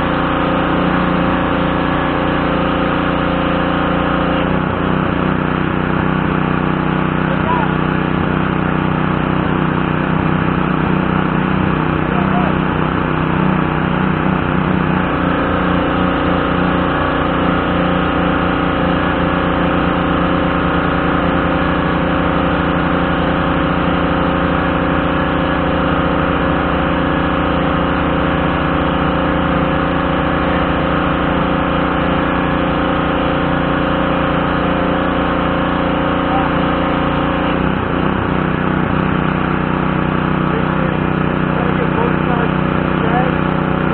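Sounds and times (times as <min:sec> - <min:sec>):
pressure washer engine running: 0:00.0 - 0:43.9.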